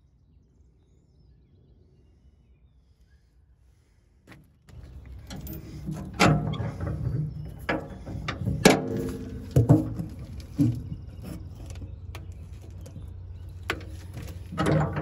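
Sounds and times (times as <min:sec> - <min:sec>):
metal hardware clanking: 0:04.7 - 0:12.9, 0:13.6 - 0:15.0.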